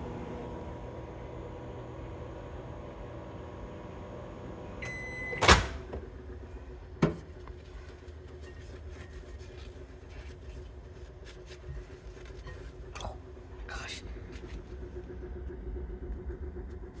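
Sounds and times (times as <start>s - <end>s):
microwave oven humming: 0.0s - 17.0s
microwave beep: 4.6s - 5.8s
microwave door popping open: 4.9s - 6.0s.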